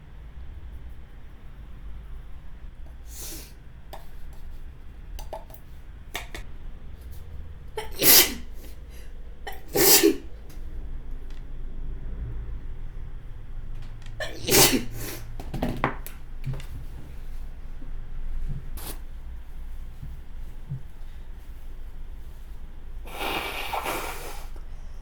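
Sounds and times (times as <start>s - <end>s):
person sneezing: 7.8s - 8.8s, 9.5s - 10.3s, 14.2s - 15.3s, 23.1s - 24.6s.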